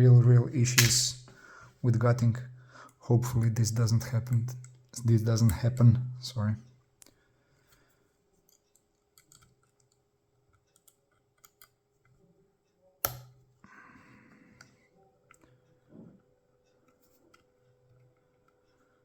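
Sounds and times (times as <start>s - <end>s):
faint metal clicks and taps: 8.4s - 12.2s.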